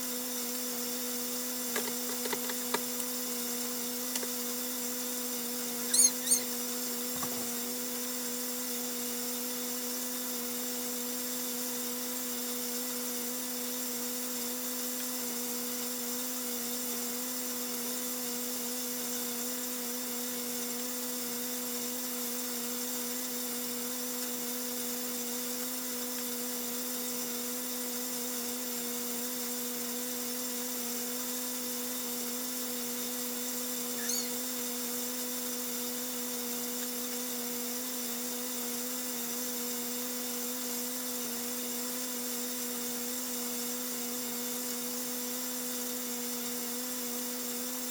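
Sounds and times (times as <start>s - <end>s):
electrical hum: 2.8s - 7.7s
high chirps: 5.9s - 7.0s, 34.0s - 34.5s.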